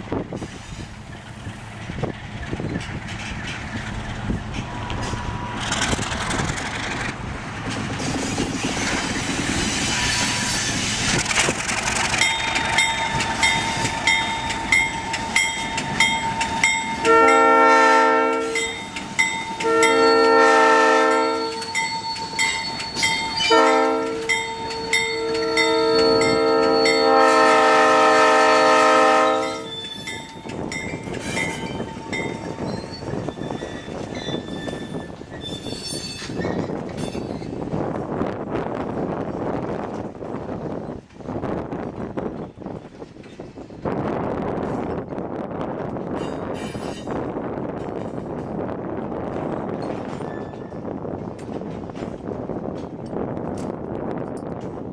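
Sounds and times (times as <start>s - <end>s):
train rolling: 0.0s - 54.9s
crossing bell ringing: 12.2s - 17.6s, 18.4s - 27.8s, 29.4s - 35.0s
locomotive air horn blasts: 17.0s - 18.7s, 19.6s - 21.7s, 23.4s - 29.8s.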